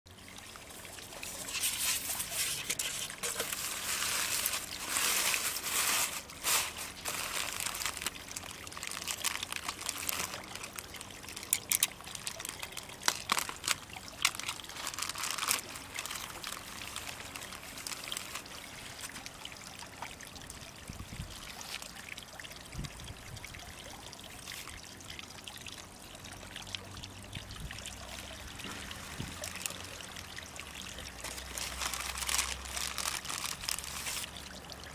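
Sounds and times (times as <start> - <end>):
water trickling and pouring: 0.1 - 34.9
sharp water splashes: 0.2 - 19.8.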